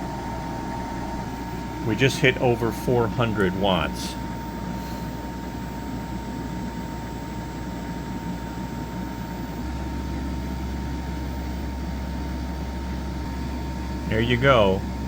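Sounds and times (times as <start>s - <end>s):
air conditioner running: 0.0s - 15.0s.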